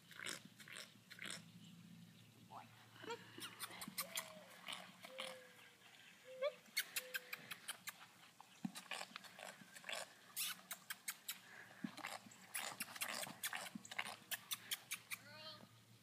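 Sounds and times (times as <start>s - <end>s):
horse flapping its lips: 3.4s - 5.2s, 6.7s - 15.2s.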